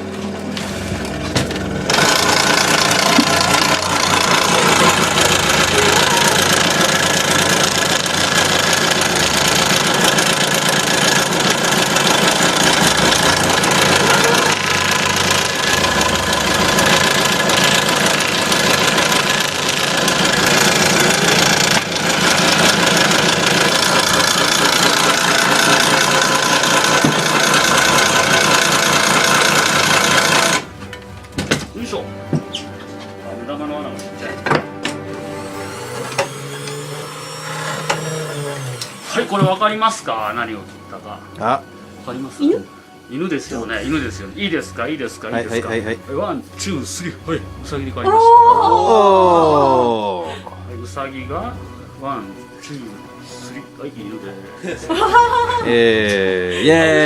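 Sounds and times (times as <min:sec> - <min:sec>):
scroll saw cutting wood: 0:00.7 - 0:30.8, 0:34.3 - 0:39.8.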